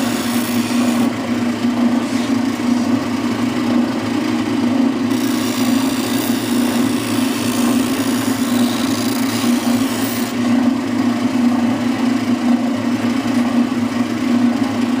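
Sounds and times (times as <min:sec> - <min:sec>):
sanding drum rasping on wood: 0:00.0 - 0:01.1
sander motor hum: 0:00.0 - 0:15.0.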